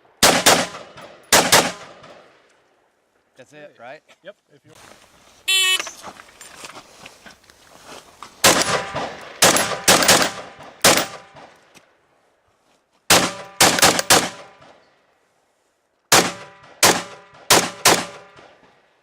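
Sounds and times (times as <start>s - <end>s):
rifle shots: 0.2s - 2.4s, 8.4s - 11.5s, 13.1s - 14.8s, 16.1s - 18.7s.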